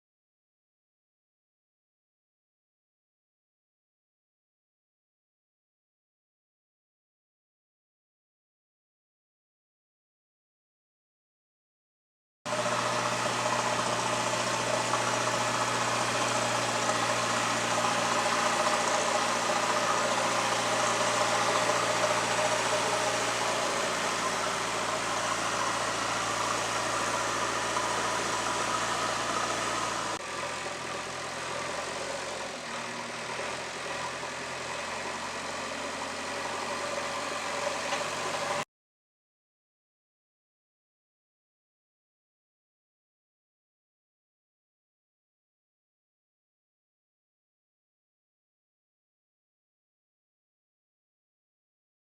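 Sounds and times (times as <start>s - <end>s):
diesel engine running: 12.5s - 38.6s.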